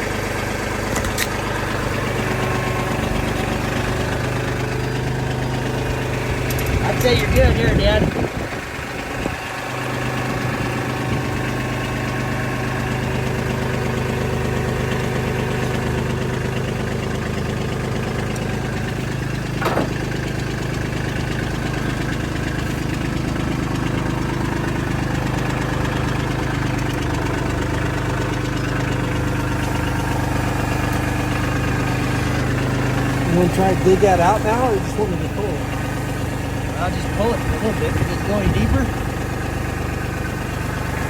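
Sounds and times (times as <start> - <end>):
engine running steadily: 0.0 - 41.0
short knock: 19.6 - 20.1.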